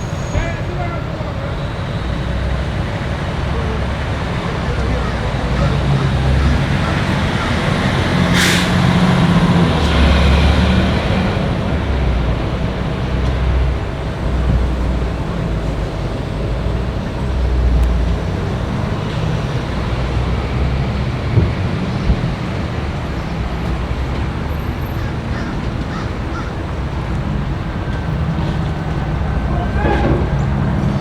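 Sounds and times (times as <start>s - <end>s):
low rumble of road traffic: 0.0s - 31.0s.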